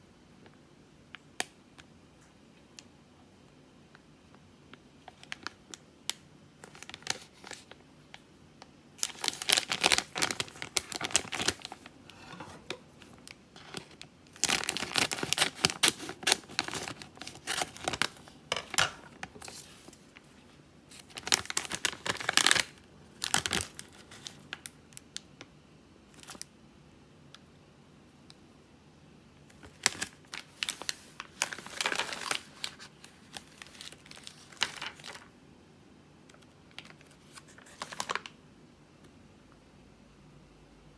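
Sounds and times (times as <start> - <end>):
packaging crinkling: 5.1 - 7.8, 9.0 - 24.8, 29.5 - 35.3, 36.7 - 38.4.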